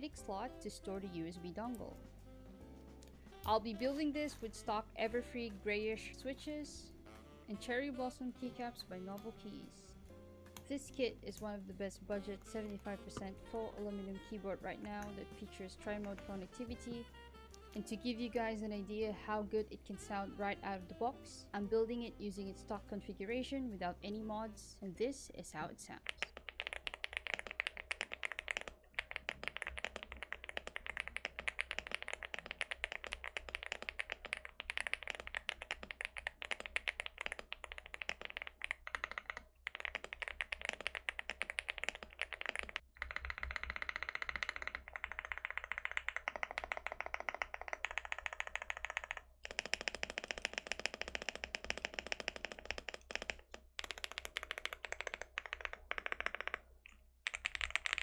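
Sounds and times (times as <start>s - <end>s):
fast typing on mechanical keyboard: 12.1s - 17.1s, 26.0s - 58.0s.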